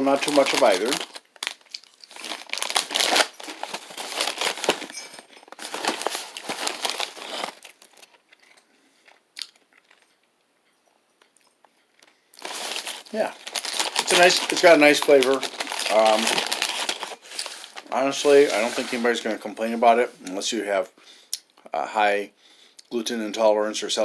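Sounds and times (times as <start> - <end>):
crackers being crunched and chewed: 0.0 - 10.3, 11.2 - 18.7.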